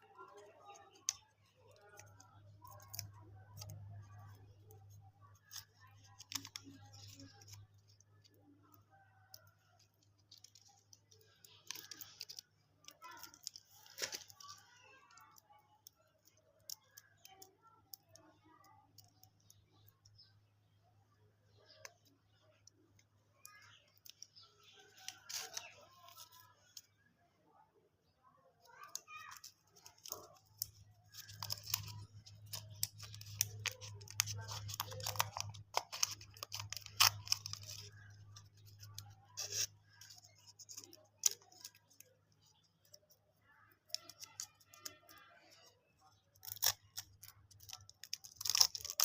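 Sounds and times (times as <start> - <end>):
plastic wrappers crinkling: 0.0 - 8.7, 9.4 - 17.4, 23.5 - 26.8, 28.7 - 49.0
plastic packaging clicking: 9.3 - 17.4, 28.7 - 43.0, 43.8 - 45.6, 46.2 - 49.0.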